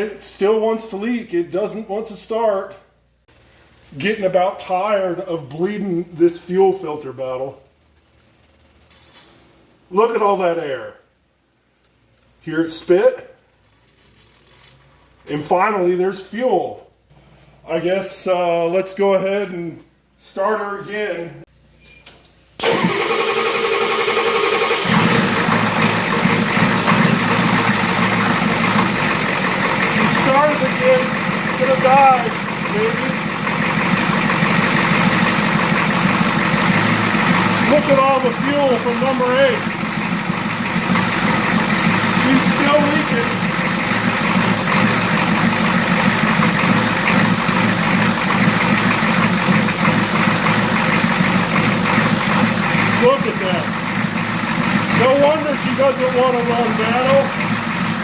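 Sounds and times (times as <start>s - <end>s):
diesel engine idling: 22.6s - 58.0s
starter motor cranking engine: 22.6s - 58.0s.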